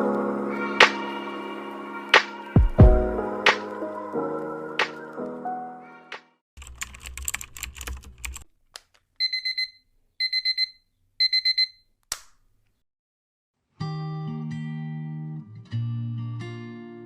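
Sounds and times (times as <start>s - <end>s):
electronic alarm beeping: 9.2s - 11.9s.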